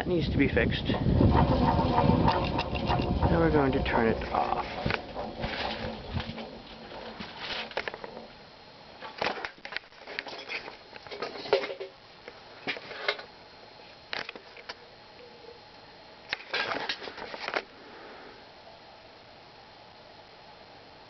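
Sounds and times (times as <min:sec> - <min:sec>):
ceiling fan coasting down: 0:00.0 - 0:09.5
fan clicks and rattles: 0:00.0 - 0:13.3, 0:14.1 - 0:14.8, 0:16.3 - 0:17.7.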